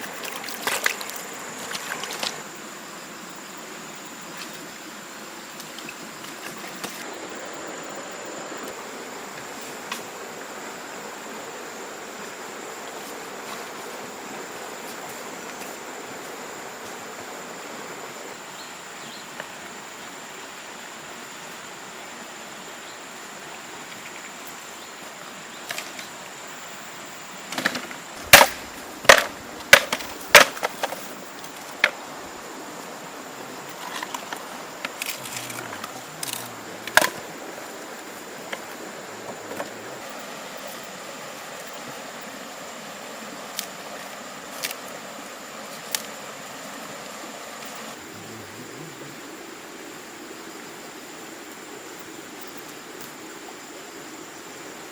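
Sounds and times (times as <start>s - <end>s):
steady hiss: 0.0s - 54.9s
sharp wooden knocks: 27.5s - 31.0s.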